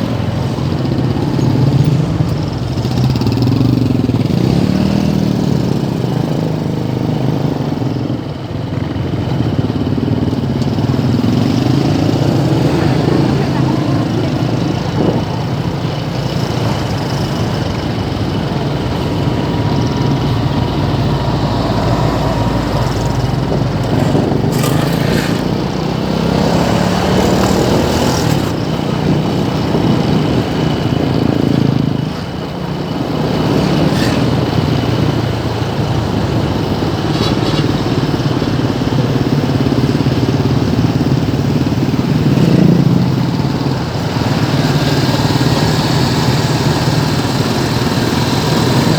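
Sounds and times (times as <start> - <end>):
motorcycle and car engines in traffic: 0.0 - 48.9.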